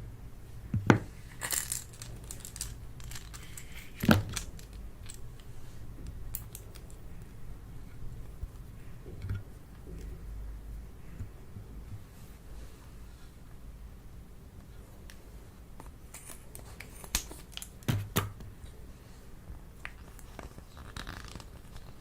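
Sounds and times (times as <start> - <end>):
small clicks and crinkling: 1.3 - 7.4, 15.8 - 18.3, 19.8 - 22.0.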